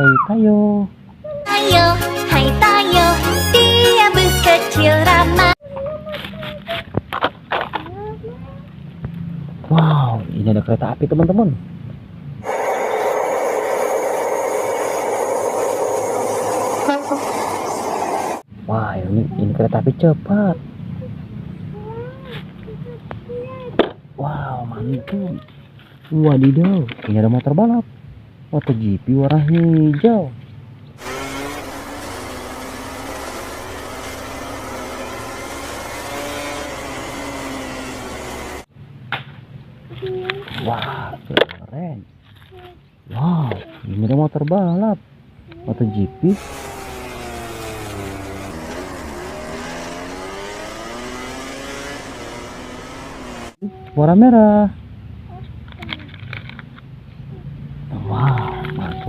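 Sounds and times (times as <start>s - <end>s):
racing motorcycle engine revving: 12.4s - 18.4s, 31.0s - 38.7s, 46.4s - 53.6s
train running: 12.5s - 18.4s.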